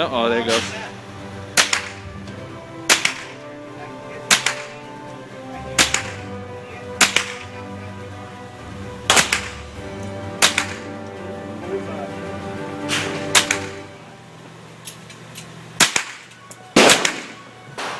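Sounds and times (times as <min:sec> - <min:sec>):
background music: 0:00.0 - 0:17.9
gunshots: 0:01.5 - 0:02.2, 0:02.8 - 0:03.4, 0:04.3 - 0:04.9, 0:05.7 - 0:06.4, 0:07.0 - 0:07.6, 0:09.0 - 0:09.7, 0:10.4 - 0:11.0, 0:12.9 - 0:13.8, 0:15.8 - 0:17.9.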